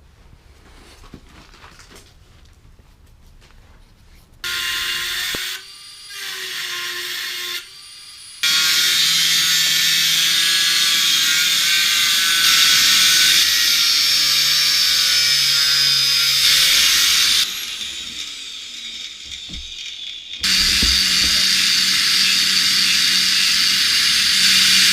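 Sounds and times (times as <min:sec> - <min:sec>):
angle grinder cutting steel: 0:04.4 - 0:24.9
grinder spinning down: 0:15.8 - 0:24.9.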